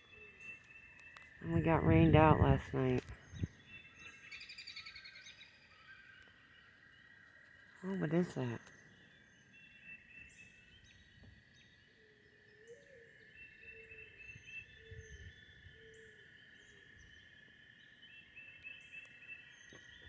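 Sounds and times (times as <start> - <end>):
birds chirping: 0.0 - 11.8.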